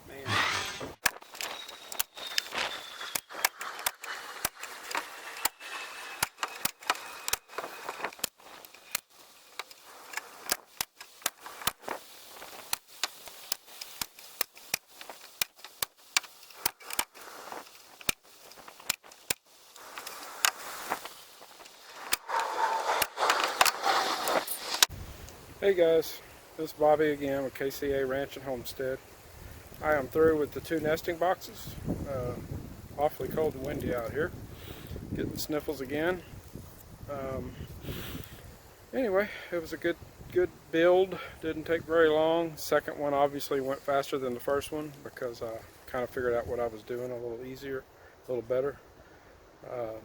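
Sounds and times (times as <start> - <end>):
rushing noise: 0.2 - 8.0, 21.7 - 24.9.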